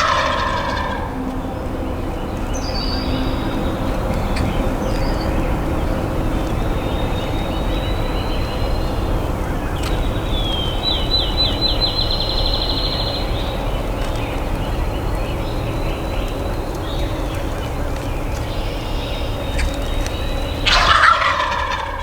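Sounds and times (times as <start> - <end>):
low background noise: 0.0 - 22.0.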